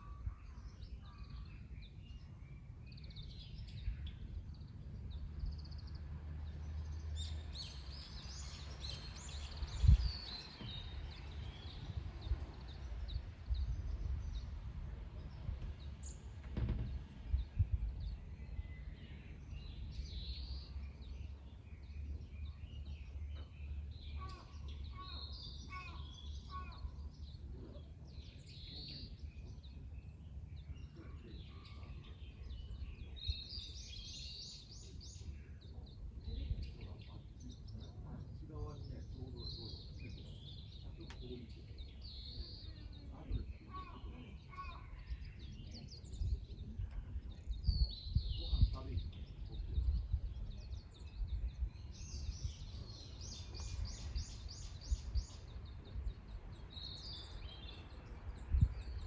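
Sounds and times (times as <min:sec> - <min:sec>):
low outdoor rumble: 0:00.0 - 0:59.0
wild birds singing: 0:00.0 - 0:59.0
low thumps: 0:15.5 - 0:17.9.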